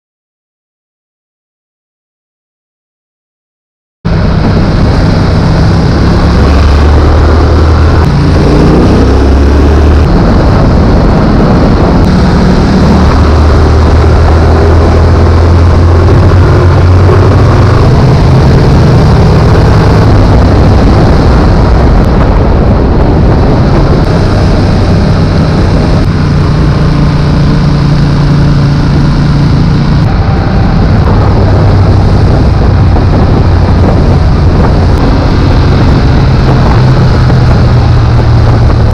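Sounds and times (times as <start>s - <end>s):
motorcycle engine revving: 4.1s - 38.9s.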